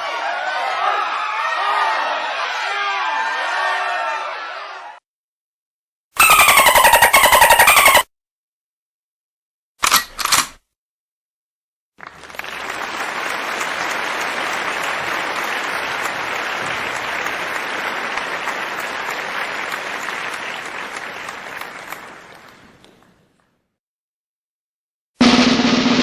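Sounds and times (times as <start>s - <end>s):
crowd clapping: 12.0s - 23.5s.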